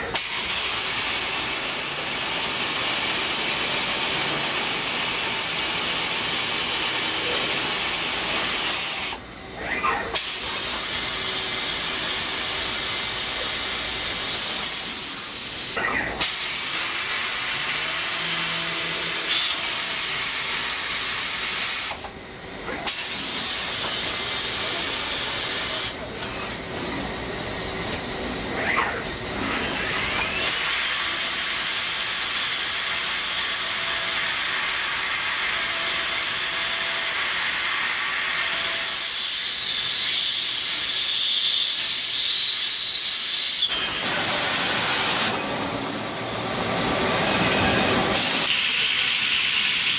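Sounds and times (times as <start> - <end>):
lathe coolant spraying hiss: 10.2 - 17.6, 19.2 - 22.2, 39.0 - 49.9.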